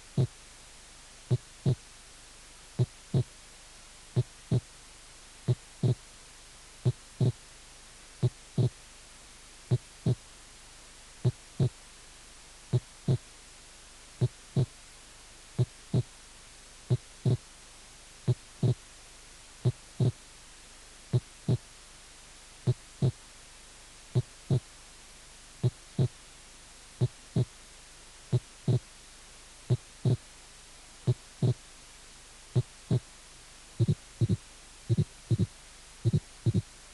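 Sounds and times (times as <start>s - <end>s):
heartbeat: 0.2s - 0.4s, 1.3s - 1.8s, 2.8s - 3.3s, 4.2s - 4.7s, 5.4s - 6.0s, 6.8s - 7.4s, 8.2s - 8.8s, 9.7s - 10.2s, 11.2s - 11.8s, 12.7s - 13.2s, 14.2s - 14.7s, 15.6s - 16.1s, 16.9s - 17.4s, 18.3s - 18.8s, 19.6s - 20.2s, 21.1s - 21.6s, 22.7s - 23.2s, 24.2s - 24.7s, 25.6s - 26.2s, 27.0s - 27.5s, 28.3s - 28.9s, 29.7s - 30.2s, 31.1s - 31.6s, 32.6s - 33.1s, 33.8s - 36.7s.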